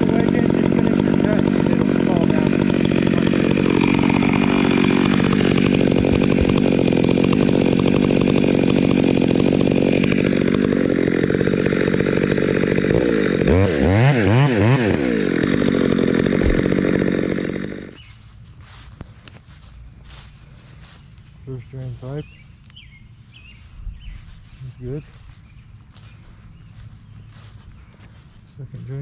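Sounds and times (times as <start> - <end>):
chainsaw cutting a log: 0.0 - 18.2.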